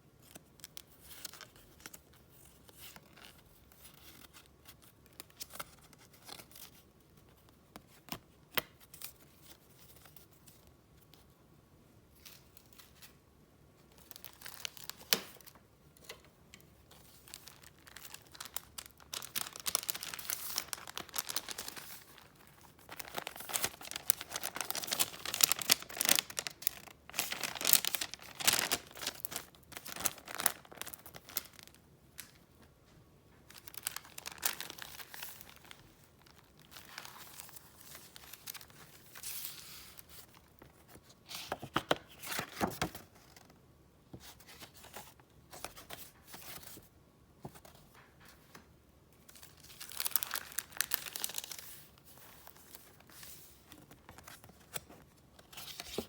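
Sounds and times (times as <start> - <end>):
paper crinkling and rustling: 13.8 - 32.4, 33.4 - 43.5, 49.3 - 56.0.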